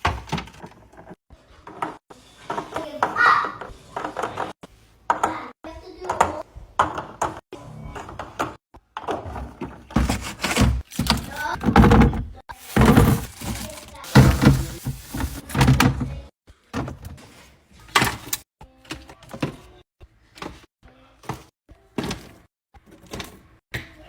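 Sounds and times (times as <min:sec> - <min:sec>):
grocery items being handled: 0:06.9 - 0:23.6.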